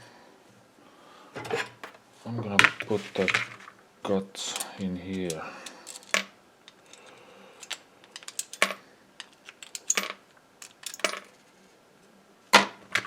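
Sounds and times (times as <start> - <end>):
small metal parts clinking: 4.4 - 11.4.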